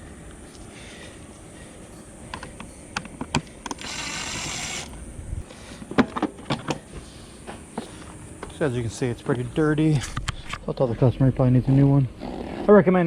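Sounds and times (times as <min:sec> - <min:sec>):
power tool motor whirring: 0:03.7 - 0:05.0.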